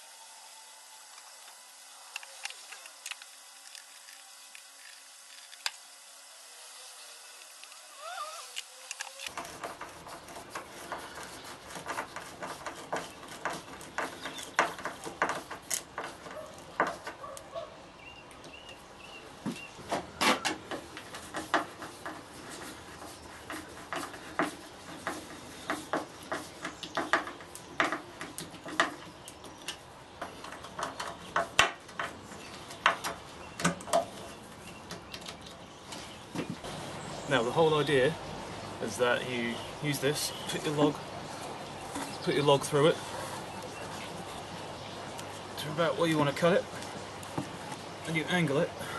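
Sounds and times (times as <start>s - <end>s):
hand tools clicking on wood: 7.4s - 17.4s, 19.5s - 36.6s.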